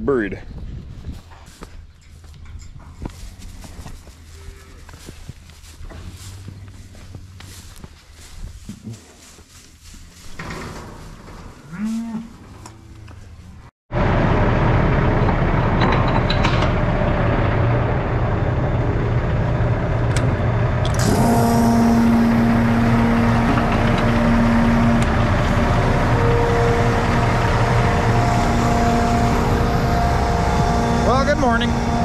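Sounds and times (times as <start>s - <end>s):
truck engine rumbling: 1.8s - 32.0s
steady whining tone: 14.0s - 32.0s.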